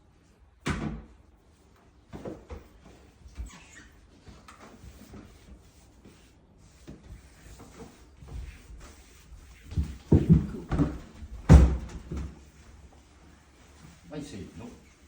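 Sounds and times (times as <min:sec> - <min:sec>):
appliance knocks and bumps: 0:09.7 - 0:12.4.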